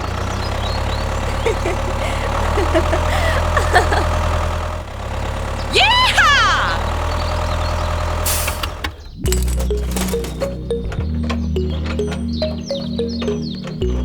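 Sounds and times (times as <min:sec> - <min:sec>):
small engine idling: 0:00.0 - 0:05.8, 0:06.8 - 0:14.0
voice-like cry: 0:05.7 - 0:07.0.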